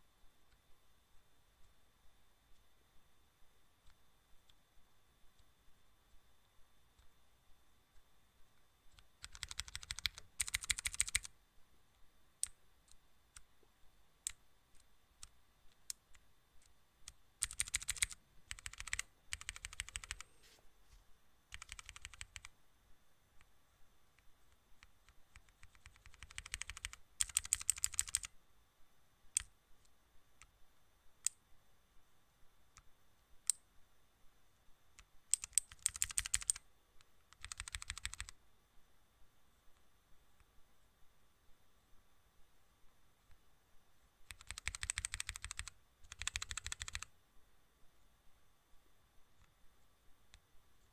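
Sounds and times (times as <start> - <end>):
typing on a keyboard: 8.9 - 11.3, 14.3 - 20.3, 21.5 - 22.5, 24.8 - 28.3, 35.0 - 36.6, 37.3 - 38.4, 44.2 - 47.1.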